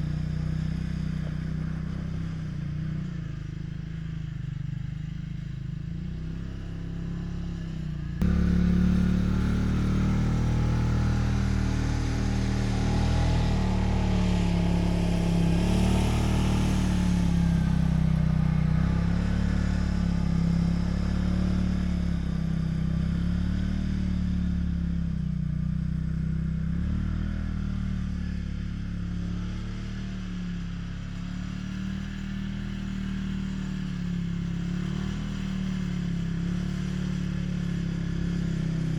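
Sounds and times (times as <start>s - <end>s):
quad bike engine under load: 8.2s - 38.9s.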